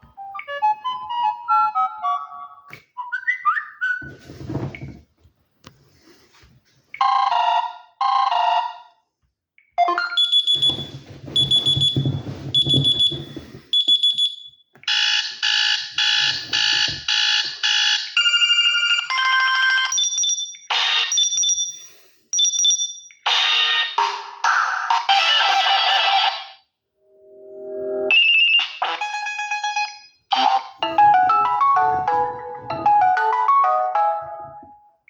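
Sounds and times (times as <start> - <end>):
phone electronic alert tones: 9.8 - 13.2.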